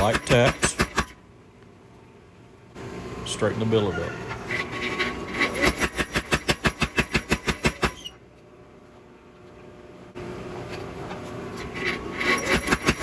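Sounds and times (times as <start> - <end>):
power hammer striking metal: 0.0 - 1.2, 12.2 - 13.0
steady mechanical sound: 0.0 - 13.0.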